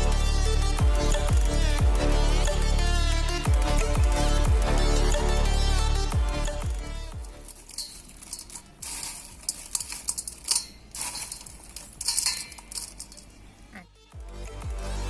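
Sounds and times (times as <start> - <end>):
spoon stirring in metal vessel: 7.1 - 13.5.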